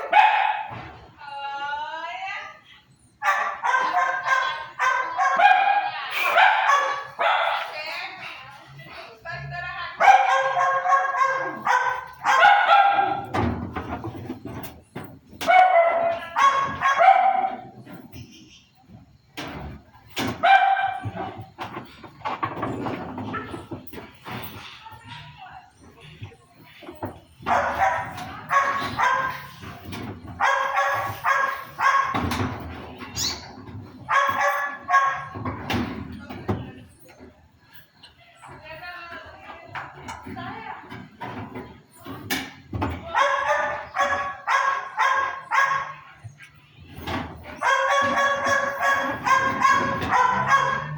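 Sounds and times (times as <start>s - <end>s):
dog barking and whining: 3.2s - 7.6s, 10.0s - 13.3s, 15.4s - 17.8s, 27.4s - 29.6s, 30.4s - 32.4s, 33.1s - 35.4s, 43.1s - 46.4s, 47.5s - 50.9s.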